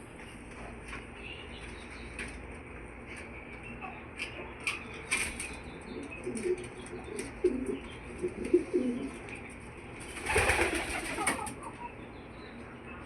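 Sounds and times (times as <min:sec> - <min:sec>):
hen clucking: 0:10.8 - 0:12.3.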